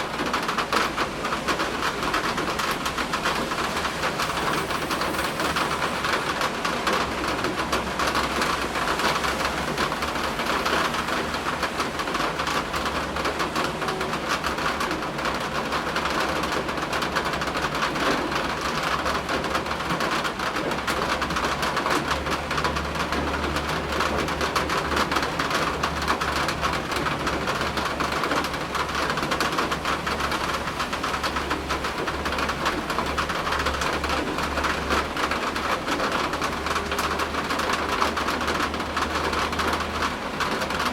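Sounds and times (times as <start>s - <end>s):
steady rain hiss: 0.0s - 19.9s
wind: 0.0s - 40.9s.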